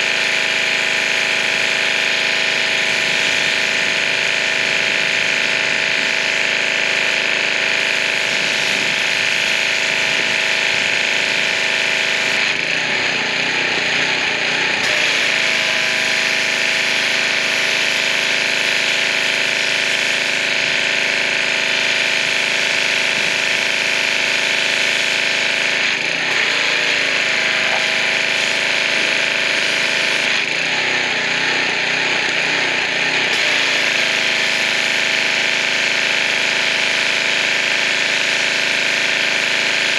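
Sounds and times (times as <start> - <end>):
high-pressure water jet hiss: 0.0 - 12.4
pressure washer motor drone: 0.0 - 39.9.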